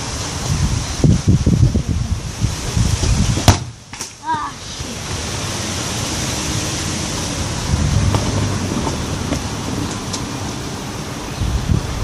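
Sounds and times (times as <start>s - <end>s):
hiss over low rumble: 0.0s - 12.0s.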